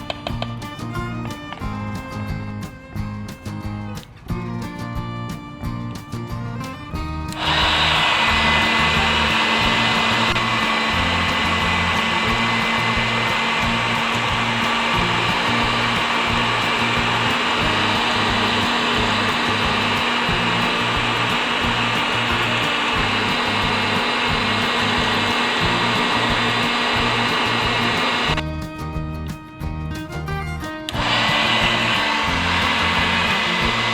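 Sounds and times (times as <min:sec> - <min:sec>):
mini vacuum cleaner motor: 0:07.3 - 0:28.4, 0:30.9 - 0:33.9.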